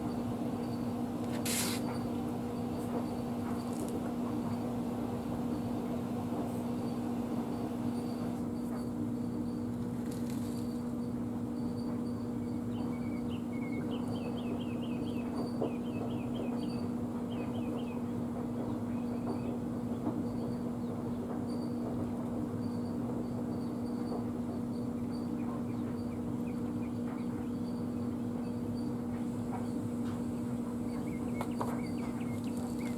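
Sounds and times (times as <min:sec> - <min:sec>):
small birds chirping: 0:30.4 - 0:32.9.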